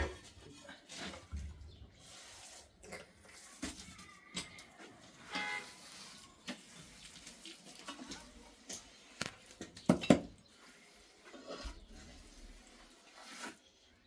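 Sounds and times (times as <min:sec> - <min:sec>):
knocks and clatters: 0:09.6 - 0:10.4.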